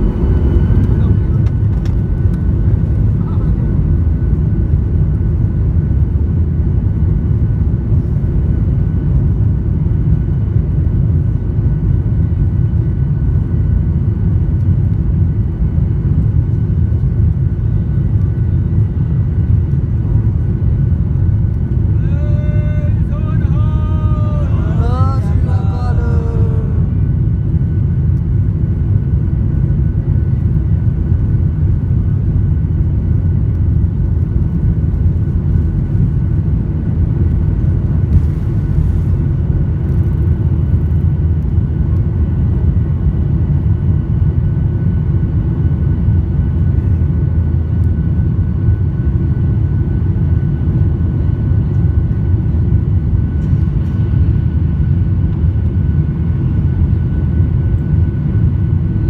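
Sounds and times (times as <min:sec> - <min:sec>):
jet engine whining tones: 0:00.0 - 0:02.6
jet engine low rumble: 0:00.0 - 0:59.0.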